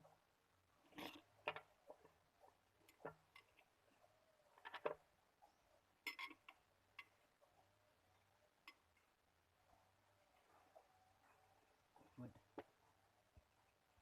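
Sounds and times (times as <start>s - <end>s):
small tools clicking and tapping: 6.0s - 7.2s.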